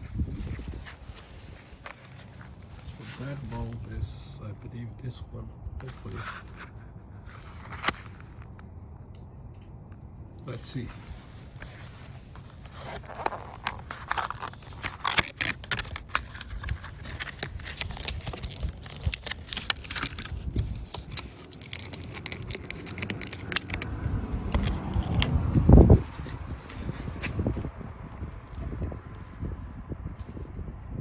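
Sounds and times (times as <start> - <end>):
plastic parts clicking and scraping: 11.7 - 23.9, 24.5 - 25.4.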